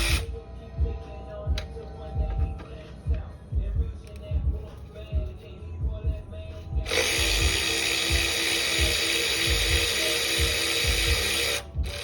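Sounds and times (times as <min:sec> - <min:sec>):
power tool whirring: 0:00.0 - 0:00.3, 0:06.8 - 0:12.0.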